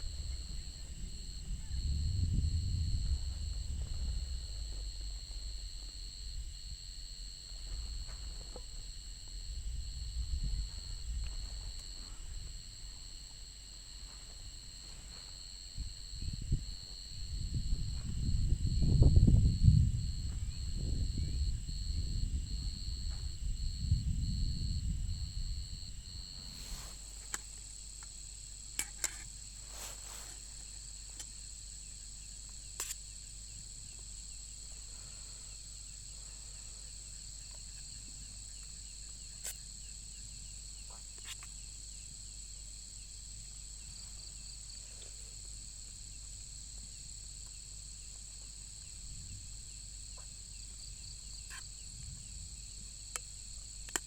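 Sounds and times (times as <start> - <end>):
low rumble: 0.0 - 13.4, 15.6 - 27.1
night insects trilling: 0.0 - 54.0.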